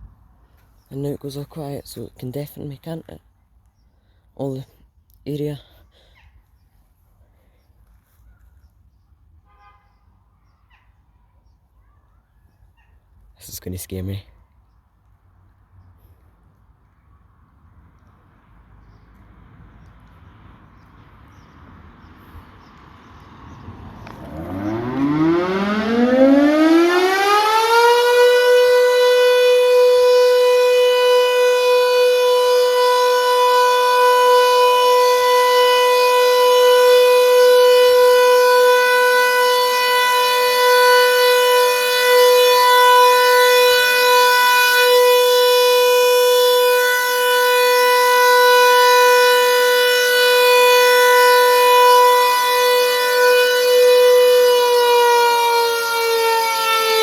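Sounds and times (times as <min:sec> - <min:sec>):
warning siren wail: 0:21.8 - 0:57.0.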